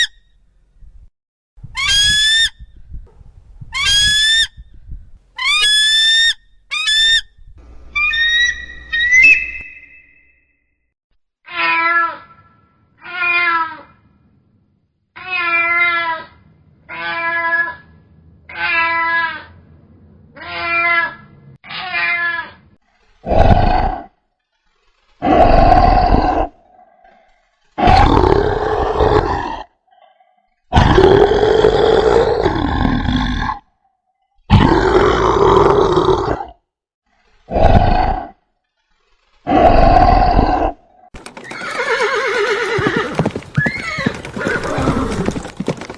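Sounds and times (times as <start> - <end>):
farm animal calls: 7.8 - 10.2.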